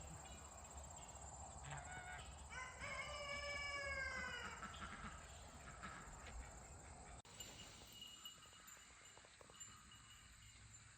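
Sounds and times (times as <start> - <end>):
rooster crowing: 1.8 - 4.7.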